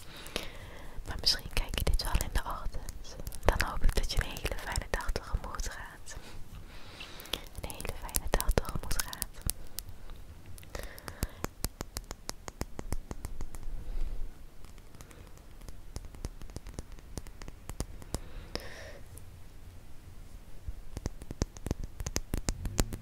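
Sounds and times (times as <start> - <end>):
faint whispers: 0.0 - 6.4
fingernails tapping on a book: 10.7 - 13.7, 14.6 - 18.6, 20.9 - 23.0.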